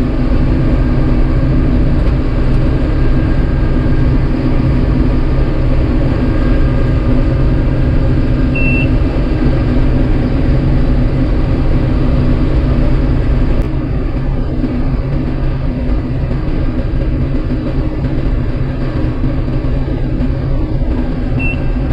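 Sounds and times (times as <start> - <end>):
combine harvester running: 0.0 - 21.9
short high beep: 8.6 - 9.0.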